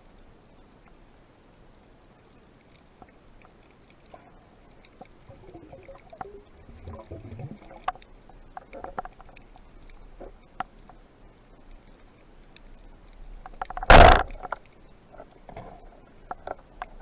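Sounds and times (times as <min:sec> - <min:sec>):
water gurgling and sloshing: 0:03.0 - 0:14.8
sharp clicks and knocks: 0:13.5 - 0:14.8.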